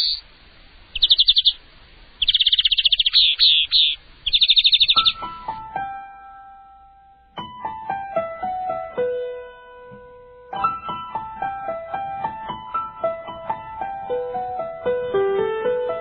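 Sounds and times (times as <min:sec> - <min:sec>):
gentle piano melody: 0:04.6 - 0:16.0.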